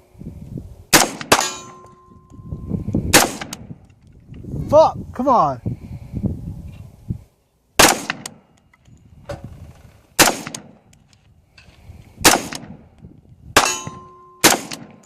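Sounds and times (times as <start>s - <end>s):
gunshots with echo: 13.6s - 15.0s.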